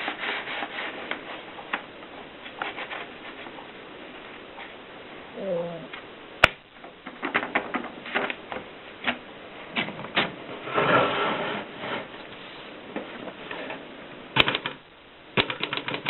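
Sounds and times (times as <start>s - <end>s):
typewriter keystrokes: 14.4s - 14.8s, 15.4s - 16.0s.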